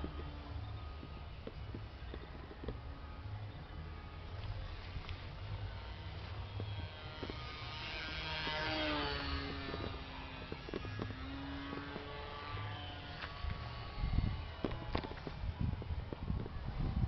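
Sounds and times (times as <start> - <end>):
low wind rumble on microphone: 0.0 - 17.0
rc plane motor and propeller whining: 0.0 - 17.0.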